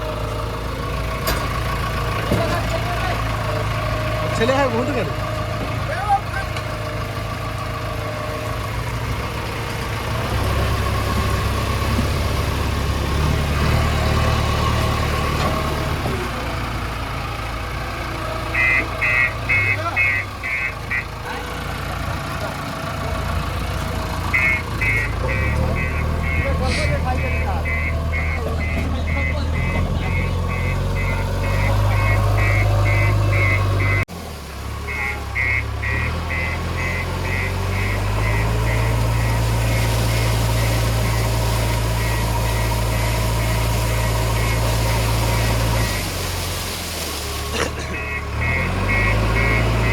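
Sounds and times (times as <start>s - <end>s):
heavy diesel engine running: 0.0s - 49.9s
reversing alarm beeping: 18.5s - 21.2s, 24.3s - 34.1s, 34.8s - 46.1s, 47.9s - 49.9s.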